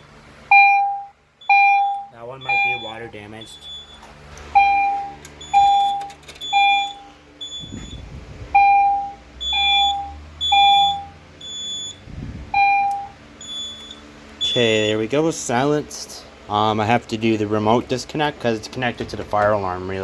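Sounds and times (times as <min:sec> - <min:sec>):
fire alarm beeps: 0:00.5 - 0:15.1.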